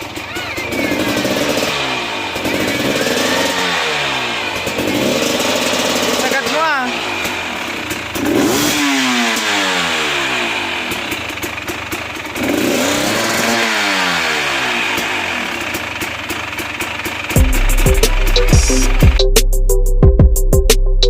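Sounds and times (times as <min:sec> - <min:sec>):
two-stroke engine revving: 0:00.0 - 0:19.2
music: 0:17.4 - 0:21.0.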